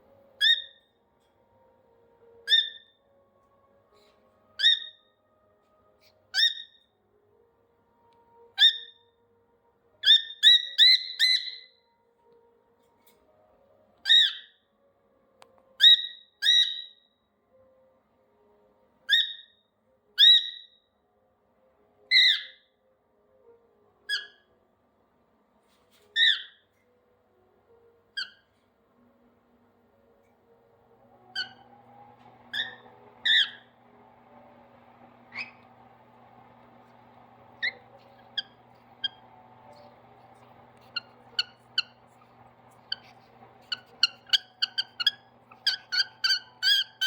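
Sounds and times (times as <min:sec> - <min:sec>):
cockatiel whistled calls: 0:00.4 - 0:00.8, 0:02.4 - 0:03.0, 0:04.6 - 0:05.1, 0:06.3 - 0:06.8, 0:08.6 - 0:09.0, 0:10.0 - 0:11.8, 0:14.0 - 0:14.6, 0:15.8 - 0:17.0, 0:19.1 - 0:19.6, 0:20.2 - 0:20.8, 0:22.1 - 0:22.6, 0:24.1 - 0:24.4, 0:26.2 - 0:26.6, 0:31.3 - 0:31.7, 0:32.5 - 0:33.7, 0:35.3 - 0:35.7, 0:37.6 - 0:39.9, 0:40.8 - 0:42.0, 0:42.9 - 0:47.0.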